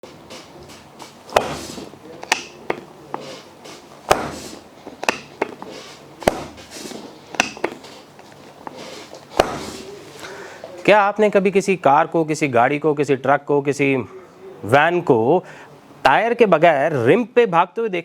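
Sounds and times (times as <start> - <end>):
joint cracks and clicks: 2.2 - 2.8.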